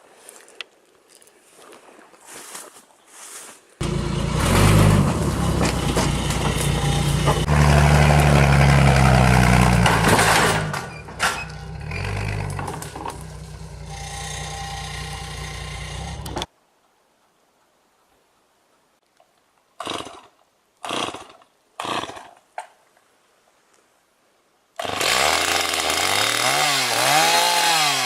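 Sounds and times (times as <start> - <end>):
heavy vehicle engine revving: 3.8 - 16.5.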